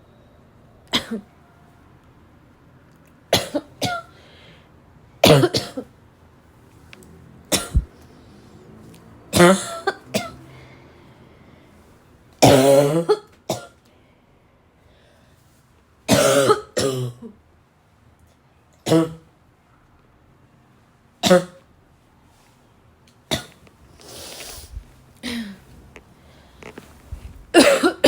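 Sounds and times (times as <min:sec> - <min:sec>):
woman coughing: 0:00.9 - 0:01.3, 0:03.4 - 0:04.1, 0:05.2 - 0:05.9, 0:07.5 - 0:07.9, 0:09.4 - 0:10.4, 0:12.4 - 0:13.7, 0:16.1 - 0:17.3, 0:18.9 - 0:19.2, 0:21.2 - 0:21.6, 0:25.2 - 0:25.6, 0:27.5 - 0:28.0.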